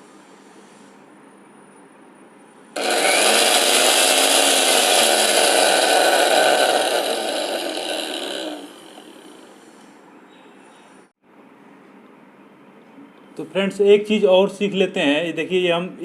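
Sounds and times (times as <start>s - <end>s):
electric motor whine: 2.8s - 9.8s.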